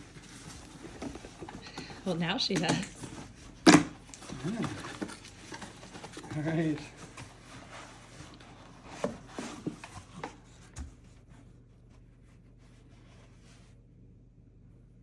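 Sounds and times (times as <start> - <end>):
packaging rustling and tearing: 0.0 - 10.6.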